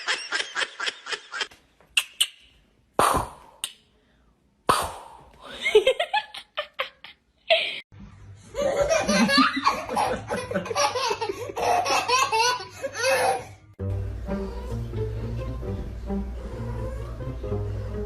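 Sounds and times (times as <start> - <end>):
people laughing: 8.6 - 12.5
string music: 13.8 - 18.0.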